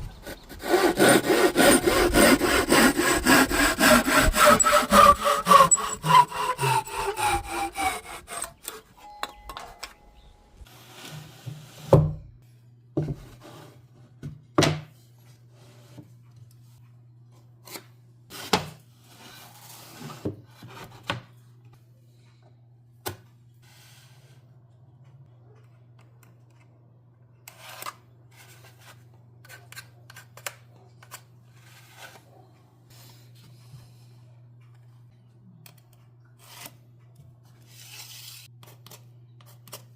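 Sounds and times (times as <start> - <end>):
saw cutting wood: 0.0 - 9.0.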